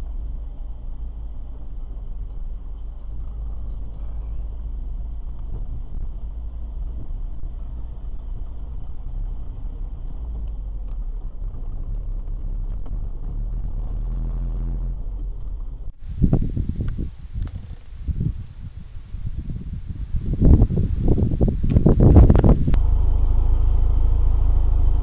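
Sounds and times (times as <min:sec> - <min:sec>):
faint ticks: 0:16.0 - 0:22.8
car engine and tyre noise: 0:16.1 - 0:22.8.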